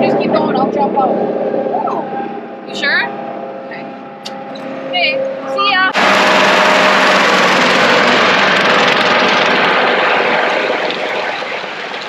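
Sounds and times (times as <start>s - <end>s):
tractor and mower roaring: 6.0s - 12.0s.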